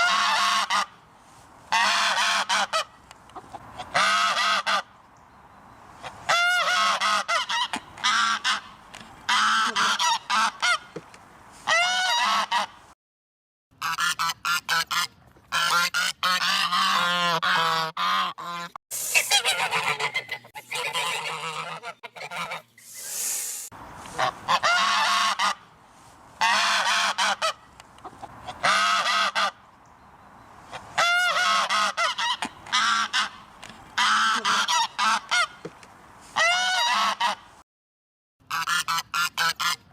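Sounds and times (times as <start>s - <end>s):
geese honking: 0.0s - 1.0s, 1.7s - 4.9s, 6.0s - 10.9s, 11.7s - 12.8s, 13.8s - 22.8s, 24.1s - 25.7s, 26.4s - 29.6s, 30.7s - 35.6s, 36.4s - 37.5s, 38.5s - 39.8s
brief hissing: 18.9s - 19.8s, 22.8s - 23.7s.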